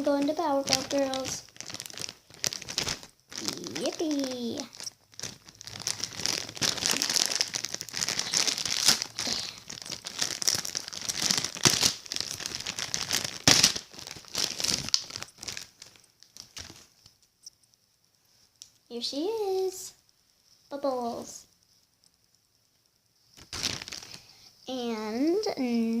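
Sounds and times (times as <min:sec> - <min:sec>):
packaging crinkling and tearing: 0:00.0 - 0:17.4, 0:23.4 - 0:24.3.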